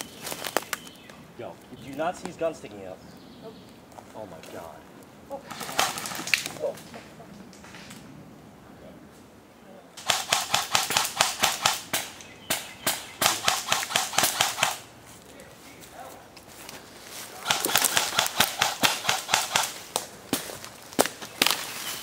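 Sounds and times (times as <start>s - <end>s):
airsoft guns firing: 5.5s - 6.4s, 10.0s - 14.9s, 17.4s - 20.1s.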